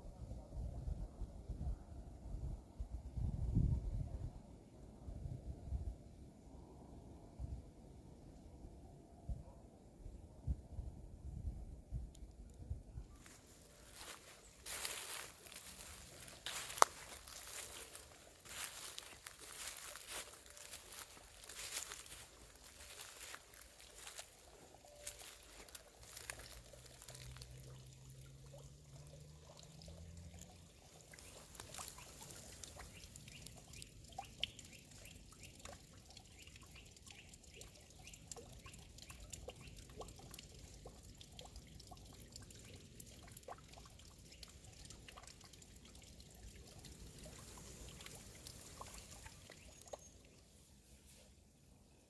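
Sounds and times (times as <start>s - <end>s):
fountain water trickling: 13.1s - 50.7s.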